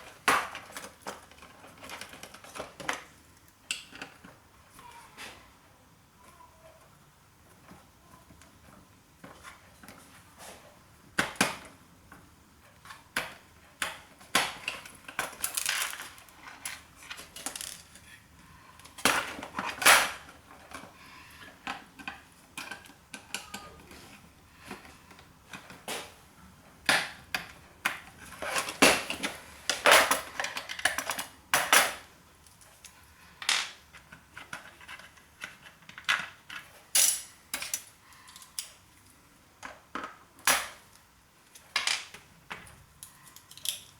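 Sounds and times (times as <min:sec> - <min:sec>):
metal parts clicking and clinking: 0:14.6 - 0:18.1, 0:29.9 - 0:38.8, 0:43.0 - 0:43.9.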